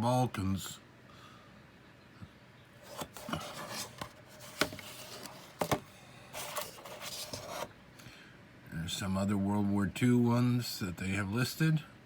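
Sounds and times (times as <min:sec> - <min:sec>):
plastic box rubbing and rustling: 0:02.8 - 0:07.7.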